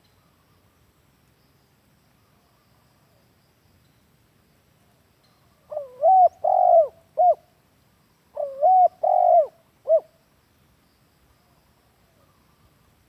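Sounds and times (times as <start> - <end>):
dove cooing: 5.7 - 7.4, 8.4 - 10.1.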